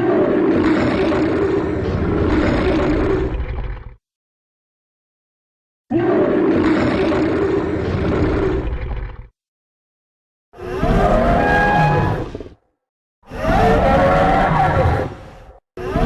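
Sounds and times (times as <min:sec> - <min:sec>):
low growling roar: 0:00.0 - 0:04.0, 0:05.9 - 0:09.3.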